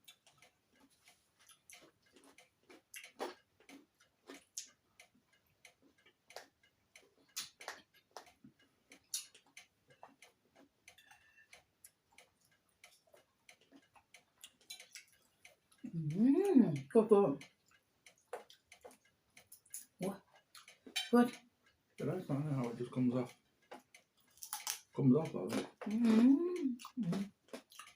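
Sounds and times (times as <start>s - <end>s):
eating mouth sounds: 1.1s - 3.4s, 25.5s - 27.9s.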